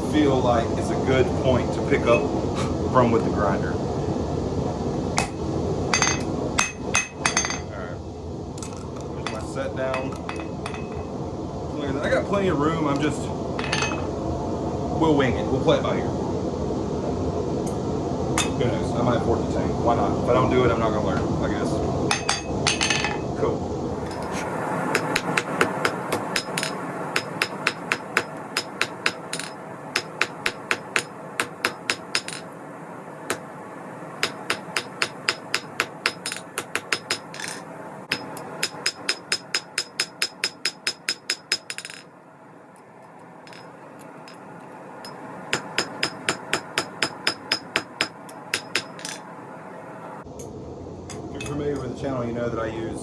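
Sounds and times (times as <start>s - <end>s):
steady rushing noise: 0.0s - 53.0s
hammer striking steel on anvil: 5.2s - 7.7s, 8.6s - 11.0s, 13.6s - 14.0s, 22.1s - 23.2s, 24.1s - 32.5s, 33.3s - 33.5s, 34.2s - 42.0s, 45.0s - 49.2s.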